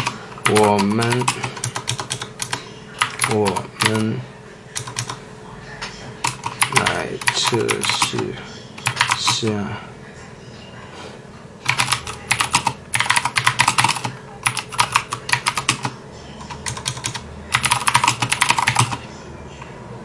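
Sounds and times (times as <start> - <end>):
mechanical keyboard typing clicks: 0.0 - 4.0, 4.8 - 5.2, 6.2 - 8.2, 8.8 - 9.3, 11.7 - 15.9, 16.6 - 19.0.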